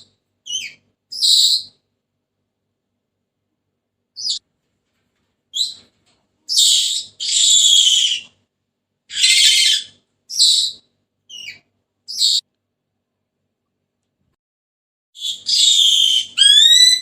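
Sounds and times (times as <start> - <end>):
parrot rasping screechy calls: 6.5 - 8.3, 9.1 - 12.4, 15.2 - 17.0.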